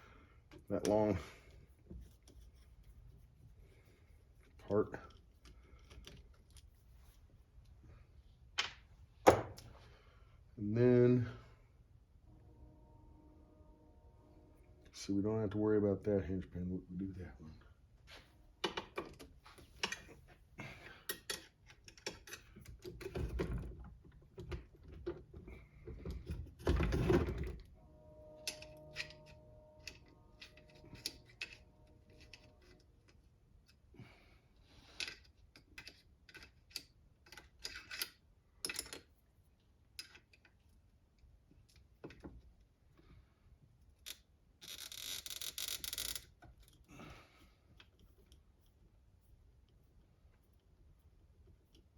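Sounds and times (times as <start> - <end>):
hand tools and metal parts clicking: 4.5 - 6.7, 18.6 - 23.5, 28.4 - 33.8, 34.8 - 39.3, 39.9 - 40.8.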